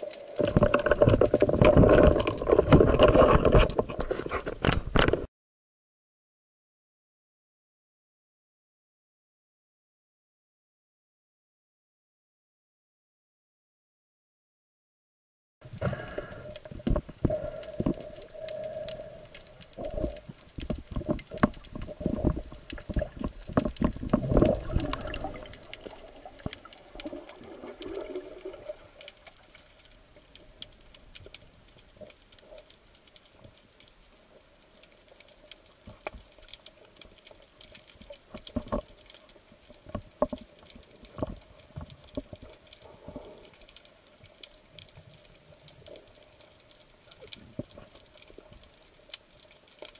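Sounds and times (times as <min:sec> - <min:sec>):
water swishing: 0:00.0 - 0:05.2, 0:15.6 - 0:49.9
underwater clicks and crackles: 0:00.0 - 0:05.3, 0:15.6 - 0:49.9.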